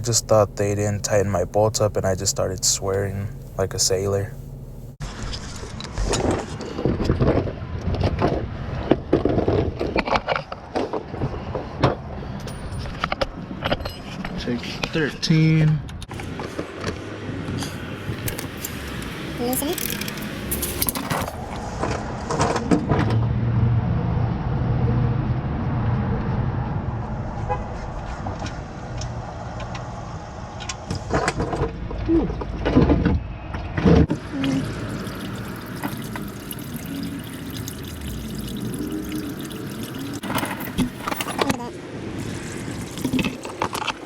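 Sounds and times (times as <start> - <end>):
oil pouring into drain pan: 34.1 - 41.2, 42.2 - 43.8.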